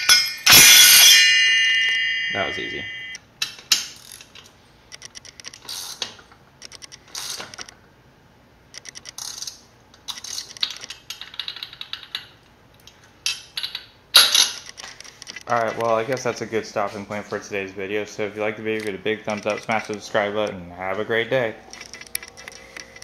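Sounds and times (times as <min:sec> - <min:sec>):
small metal clinks: 0:21.7 - 0:23.0.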